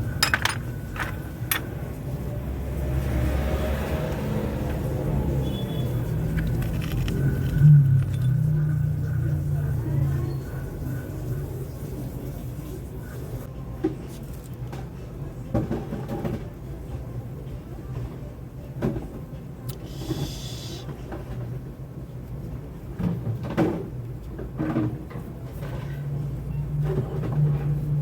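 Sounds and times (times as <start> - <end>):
knocks and clatter of hand work: 0.2 - 1.7.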